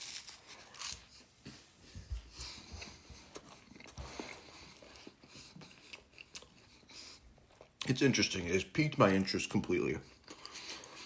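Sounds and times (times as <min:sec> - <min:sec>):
person chewing toast: 0:00.0 - 0:01.7, 0:02.4 - 0:07.9, 0:10.1 - 0:11.0.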